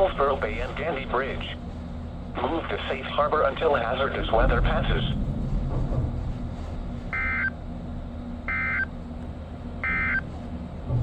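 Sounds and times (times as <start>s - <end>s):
steady low hum: 0.0s - 11.0s
warbling data tone bursts: 7.1s - 7.6s, 8.5s - 8.9s.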